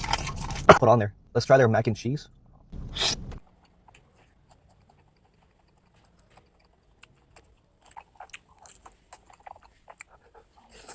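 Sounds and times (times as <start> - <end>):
wet chewing mouth clicks: 3.0 - 10.7.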